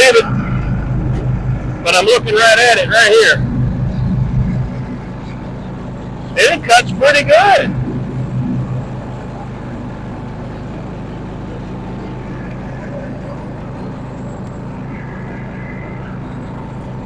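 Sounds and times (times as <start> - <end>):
riding mower cutting grass: 0.0 - 17.0.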